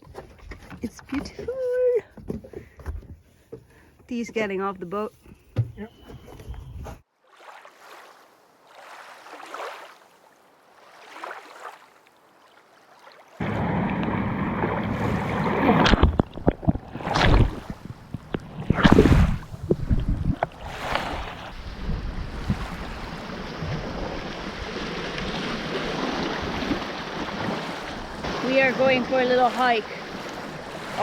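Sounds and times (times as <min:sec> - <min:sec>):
water lapping and splashing: 0:00.0 - 0:04.5, 0:05.7 - 0:31.0
wind on microphone: 0:13.4 - 0:31.0.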